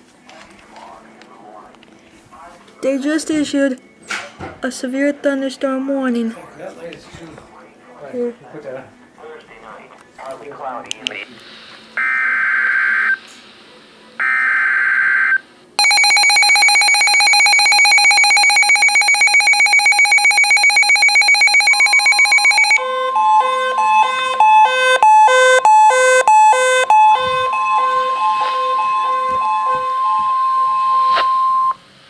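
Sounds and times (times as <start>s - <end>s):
burst of data tones: 15.2s - 22.8s, 23.9s - 31.8s
short beeps at several pitches: 15.8s - 22.8s, 25.0s - 31.8s
pulsing attention tone: 15.8s - 31.8s
steady high tone: 15.8s - 31.8s.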